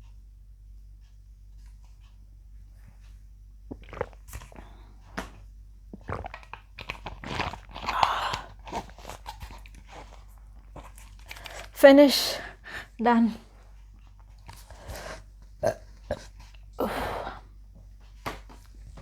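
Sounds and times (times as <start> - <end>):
mouth clicks: 3.7 - 5.3, 6.0 - 8.5
person gulping soda: 3.7 - 10.0, 14.4 - 17.4.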